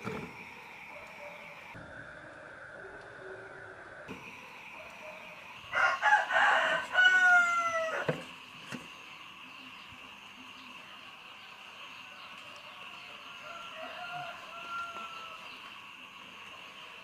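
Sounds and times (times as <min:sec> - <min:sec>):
rooster crowing: 0:04.7 - 0:08.3, 0:13.0 - 0:15.8.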